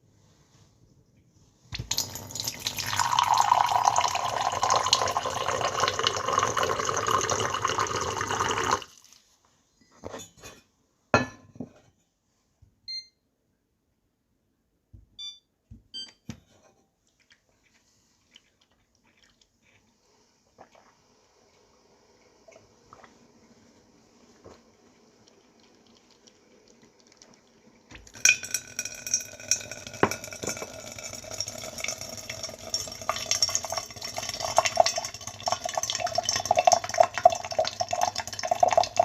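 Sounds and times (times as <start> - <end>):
water pouring into a teapot: 1.8 - 9.2, 18.2 - 39.0.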